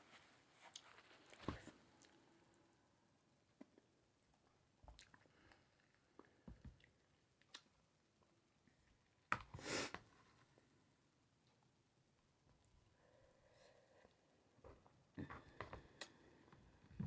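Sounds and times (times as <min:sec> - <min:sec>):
person chewing food: 0:04.9 - 0:07.8.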